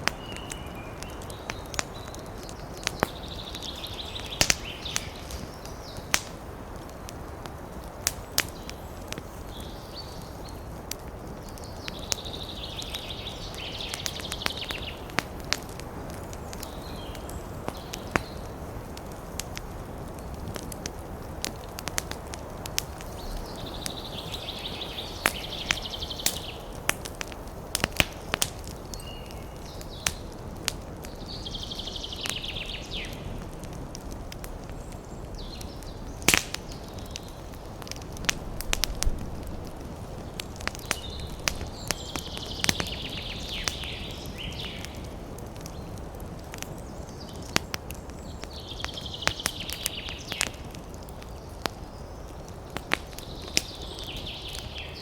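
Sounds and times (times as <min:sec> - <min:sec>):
campfire crackling and popping: 0:00.0 - 0:55.0
low rush of flame: 0:32.2 - 0:54.8.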